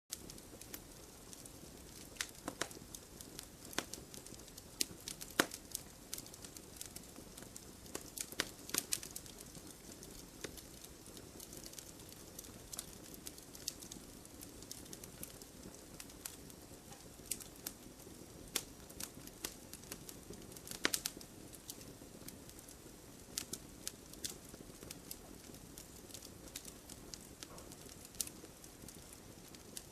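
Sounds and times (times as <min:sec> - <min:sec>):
wood fire crackling: 0:00.1 - 0:29.9
fire hissing: 0:00.2 - 0:17.8.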